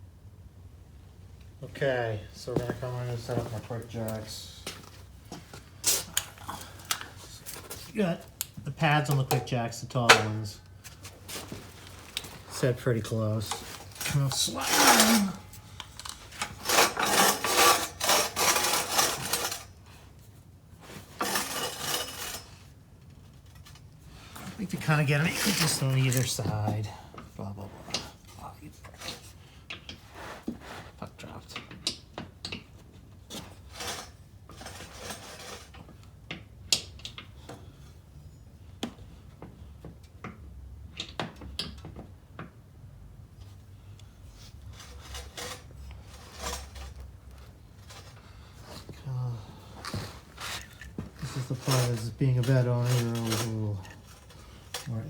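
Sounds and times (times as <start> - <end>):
scraping: 8.8 - 19.7, 24.1 - 27.0, 44.4 - 55.0
metal frame scraping across floor: 12.4 - 15.6, 16.3 - 19.7, 20.8 - 22.7, 49.9 - 55.0.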